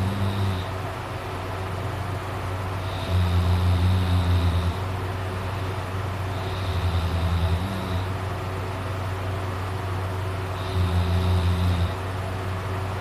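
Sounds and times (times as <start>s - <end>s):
person snoring: 0.0s - 0.7s, 2.8s - 4.8s, 6.3s - 8.2s, 10.5s - 12.0s
steady low hum: 0.0s - 13.0s.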